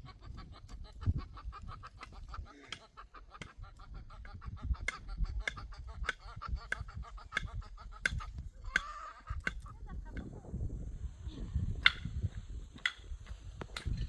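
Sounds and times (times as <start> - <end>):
fowl calling: 0.0 - 9.8.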